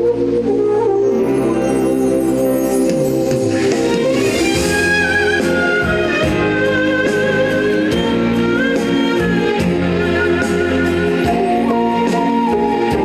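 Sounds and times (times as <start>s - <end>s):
live trot band music: 2.5s - 13.0s.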